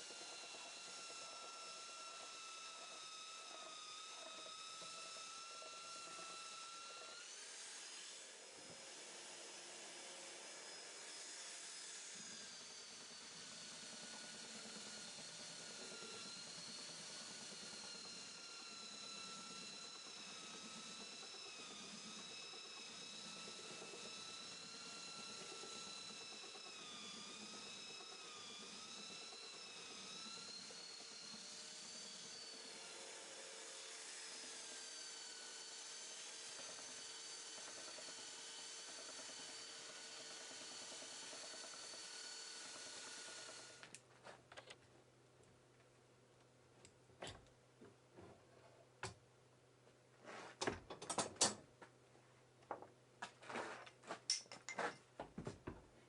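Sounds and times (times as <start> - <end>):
power tool motor whining: 0.0 - 43.9.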